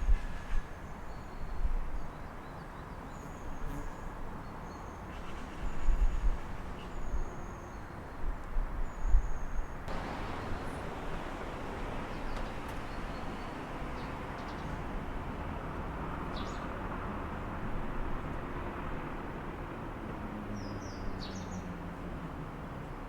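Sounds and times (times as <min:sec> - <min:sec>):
distant city traffic hum: 0:09.8 - 0:23.0.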